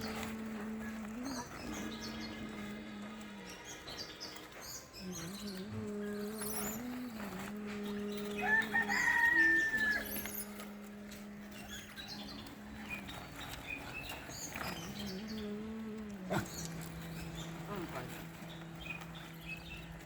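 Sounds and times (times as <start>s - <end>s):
steady low drone: 0.0s - 20.0s
rooster crowing: 8.3s - 10.6s.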